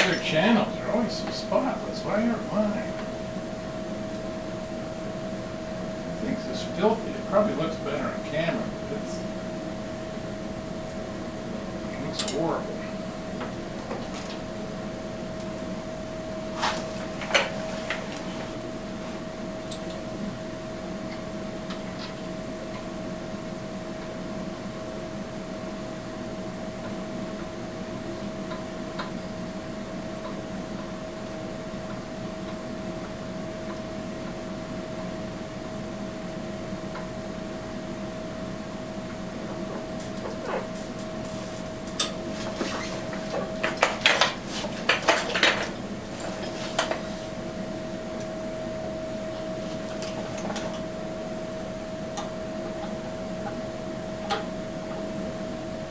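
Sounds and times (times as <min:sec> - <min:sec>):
steady machine hum: 0:00.0 - 0:55.9.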